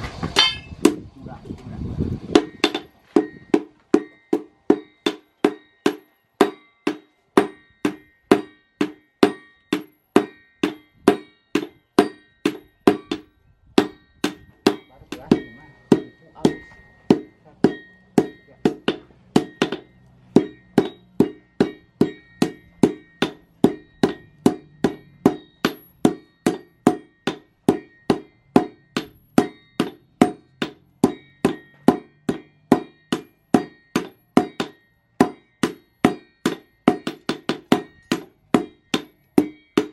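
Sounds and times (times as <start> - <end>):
hammer ringing on an anvil: 0.4 - 1.0, 2.3 - 39.9.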